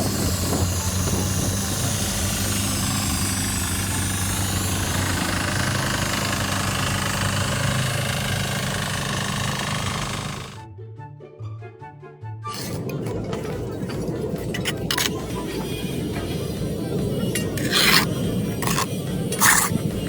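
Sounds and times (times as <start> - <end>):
machine clatter with low hum: 0.0 - 10.6, 12.5 - 20.0
background music: 10.6 - 20.0.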